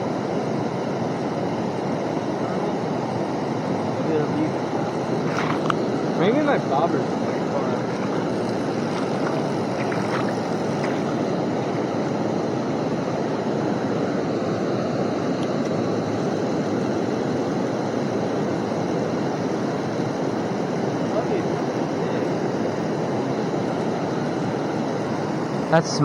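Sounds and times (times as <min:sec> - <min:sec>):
river water rushing: 0:05.1 - 0:11.4.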